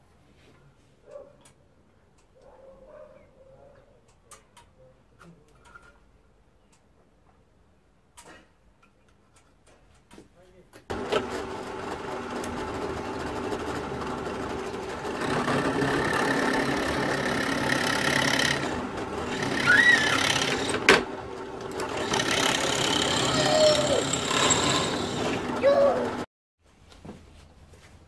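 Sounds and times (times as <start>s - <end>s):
electric drill boring wood: 10.9s - 26.3s.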